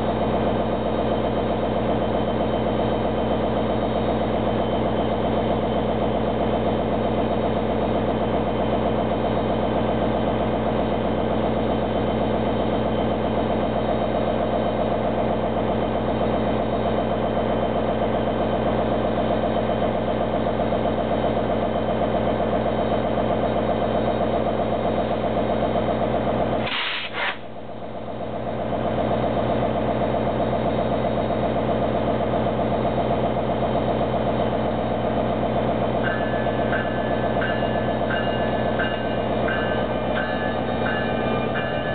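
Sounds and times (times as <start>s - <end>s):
diesel locomotive idling: 0.0s - 41.9s
brief hiss: 26.6s - 27.5s.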